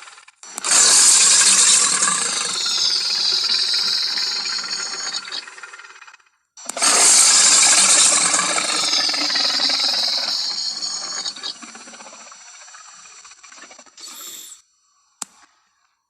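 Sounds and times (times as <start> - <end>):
creature rough hiss: 11.9 - 14.6.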